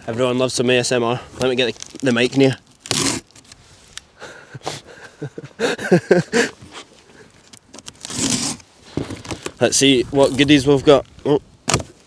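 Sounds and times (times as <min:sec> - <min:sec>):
tape and cardboard tearing: 0:01.4 - 0:03.6, 0:07.4 - 0:10.6, 0:11.7 - 0:12.0.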